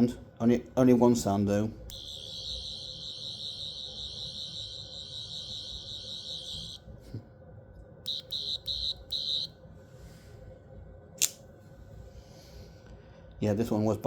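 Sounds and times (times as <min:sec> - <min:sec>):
high-pitched electronic tone: 0:01.9 - 0:06.8, 0:08.1 - 0:09.5.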